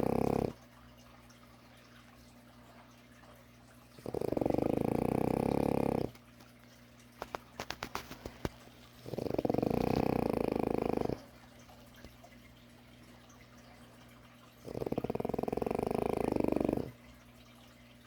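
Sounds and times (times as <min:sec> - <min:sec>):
puppy snoring: 0:00.0 - 0:00.6, 0:04.0 - 0:06.2, 0:08.0 - 0:11.4, 0:14.6 - 0:17.0.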